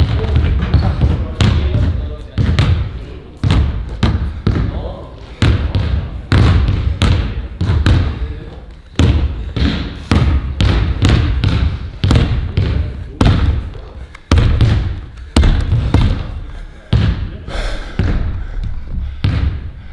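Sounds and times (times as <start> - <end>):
basketball bouncing on hard court: 0.0 - 17.4, 18.0 - 19.7.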